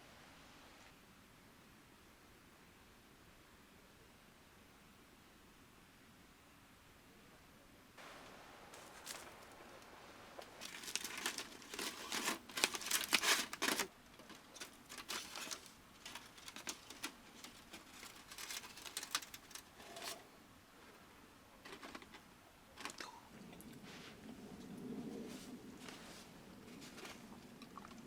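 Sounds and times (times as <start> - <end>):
rustling and crinkling: 8.0 - 9.7, 10.4 - 20.3, 21.6 - 23.0, 25.2 - 27.4.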